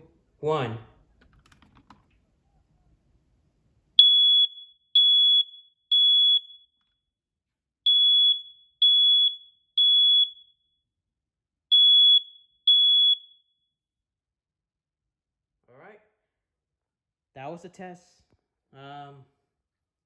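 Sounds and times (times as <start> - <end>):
smoke alarm high-pitched beeps: 4.0 - 6.8, 7.9 - 10.8, 11.7 - 13.7.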